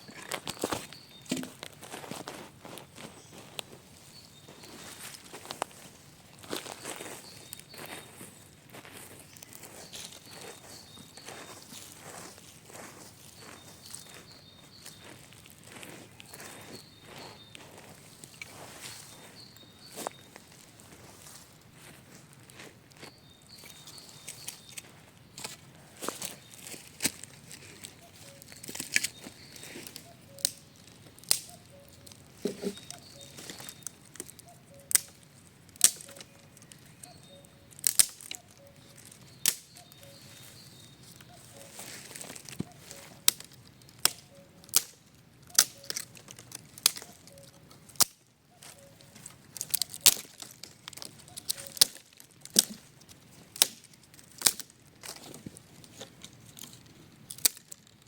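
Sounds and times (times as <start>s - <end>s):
crinkling and rustling: 0.0s - 58.0s
sharp snaps and clicks: 27.0s - 32.2s, 32.8s - 40.1s, 42.2s - 55.2s, 56.2s - 58.0s.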